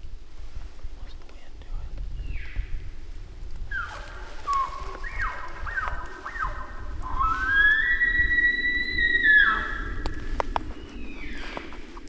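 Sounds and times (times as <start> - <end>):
elk bugle whistle: 3.7 - 10.5.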